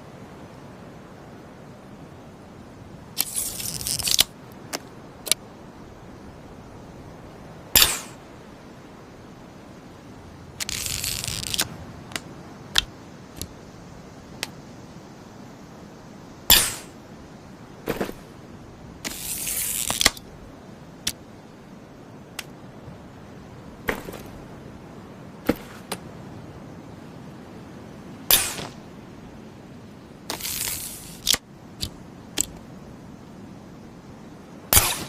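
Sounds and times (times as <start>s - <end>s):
hissing rasps: 3.2s - 4.3s, 10.6s - 12.2s, 16.5s - 17.0s, 19.0s - 20.2s, 30.3s - 32.0s
loud sharp crossbow snaps: 7.8s - 8.2s, 16.5s - 16.9s, 28.3s - 28.8s, 34.7s - 35.0s.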